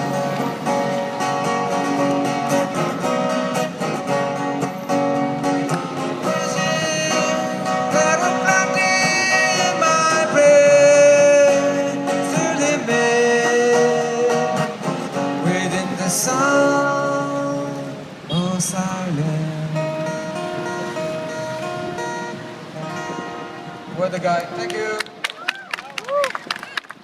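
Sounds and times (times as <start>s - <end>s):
acoustic guitar strumming: 0.0s - 25.2s
person singing: 6.2s - 14.6s.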